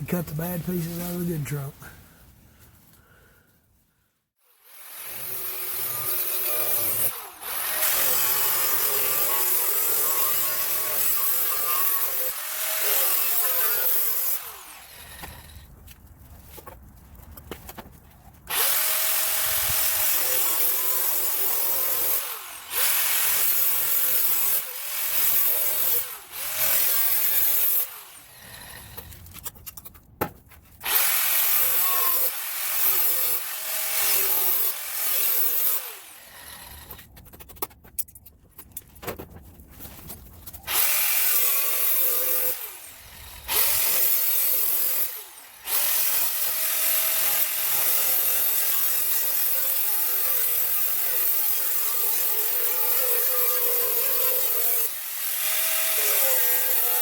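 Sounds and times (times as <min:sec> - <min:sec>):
power tool cutting sheet steel: 0:04.4 - 0:15.7, 0:18.5 - 0:29.2, 0:30.8 - 0:37.1, 0:40.7 - 0:57.0.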